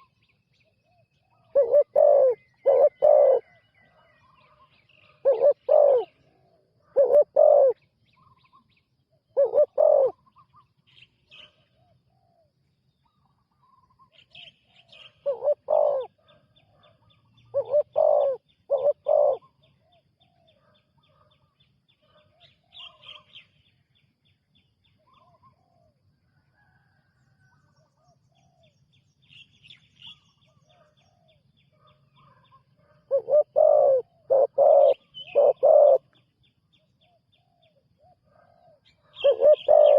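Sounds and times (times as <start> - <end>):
dove cooing: 1.3 - 4.0, 5.1 - 7.8, 9.4 - 10.2, 15.2 - 16.4, 17.5 - 19.6, 32.2 - 36.2, 38.0 - 39.9
small birds chirping: 13.0 - 25.6, 28.0 - 39.9.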